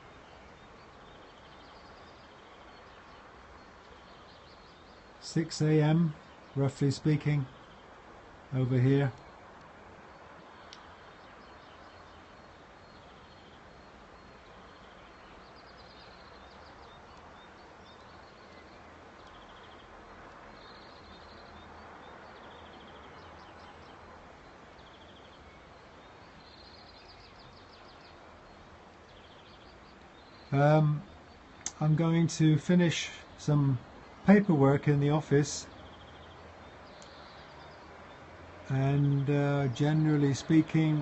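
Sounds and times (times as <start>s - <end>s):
steady hiss: 0.0s - 15.7s, 28.0s - 35.7s, 38.6s - 41.0s
songbirds chirping and trilling: 0.0s - 41.0s.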